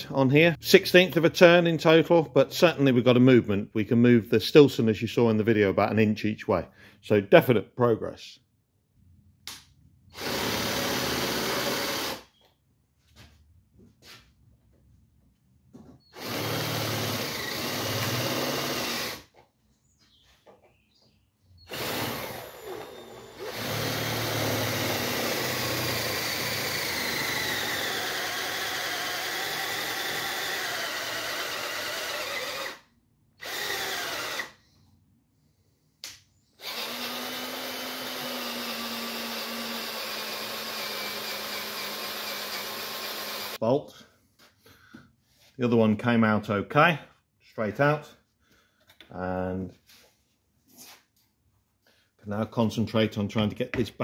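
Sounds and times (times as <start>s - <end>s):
electric drill whining: 10.1s - 12.4s, 16.1s - 19.3s, 21.7s - 34.6s, 36.6s - 43.6s.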